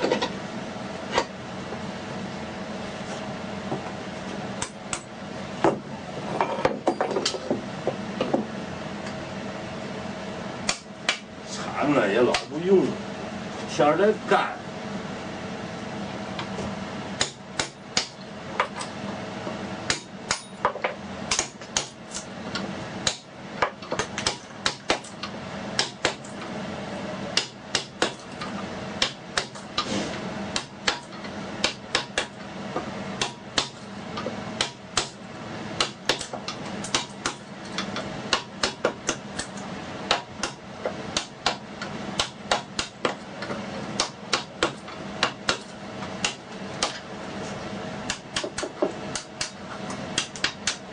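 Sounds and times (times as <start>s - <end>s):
hammer striking chisel: 17.2s - 18.7s, 19.9s - 22.2s, 23.0s - 25.1s, 25.8s - 26.3s, 27.4s - 28.2s, 29.0s - 29.9s, 30.6s - 32.4s, 33.2s - 35.2s, 35.8s - 40.6s, 41.2s - 41.6s, 42.2s - 43.2s, 44.0s - 47.0s, 48.1s - 49.6s, 50.2s - 50.8s.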